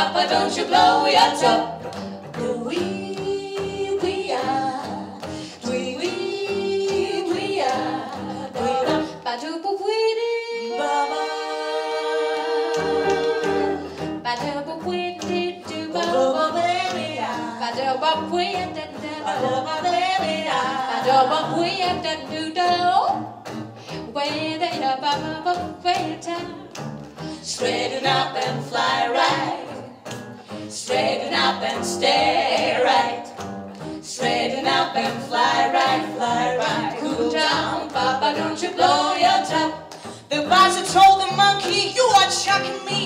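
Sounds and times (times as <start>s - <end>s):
jazz band playing: 12.4s - 22.9s.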